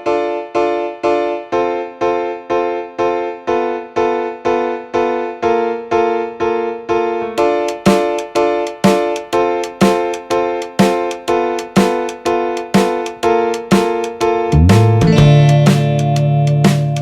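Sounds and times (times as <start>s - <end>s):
keyboard chords: 0.0s - 17.0s
drum hits: 7.4s - 17.0s.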